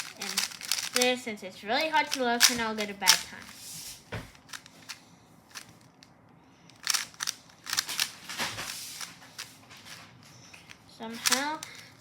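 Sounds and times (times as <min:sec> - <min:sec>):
speed cube plastic clicking: 0:00.0 - 0:01.2, 0:01.8 - 0:03.6, 0:04.4 - 0:05.9, 0:06.7 - 0:09.5, 0:10.6 - 0:12.0.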